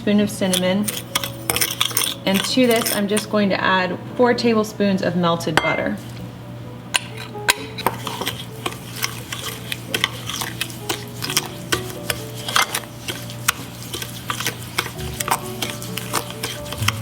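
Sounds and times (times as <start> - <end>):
utensil scraping a mixing bowl: 0.4 - 3.5, 7.0 - 17.0.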